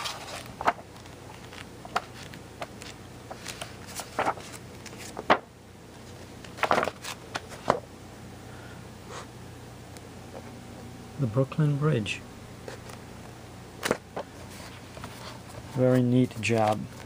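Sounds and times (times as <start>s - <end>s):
paper bundle rustling and clicking: 0.0s - 7.8s, 13.8s - 17.0s.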